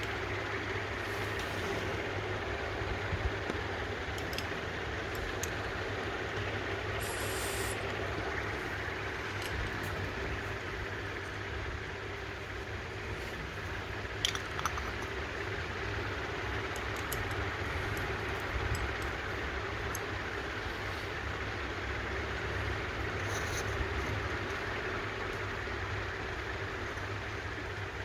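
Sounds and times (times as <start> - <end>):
steady background hum: 0.0 - 28.0
short hiss: 7.0 - 7.9.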